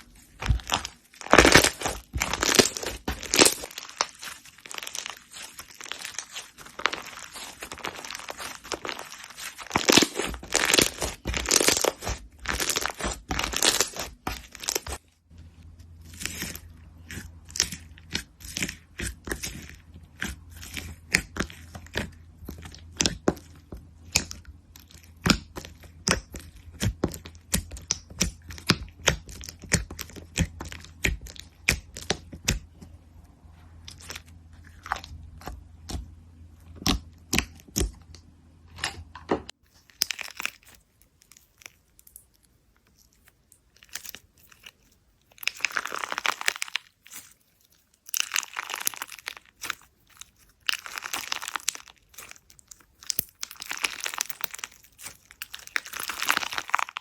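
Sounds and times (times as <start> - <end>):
slime crackling: 0.0 - 15.1, 39.6 - 57.0.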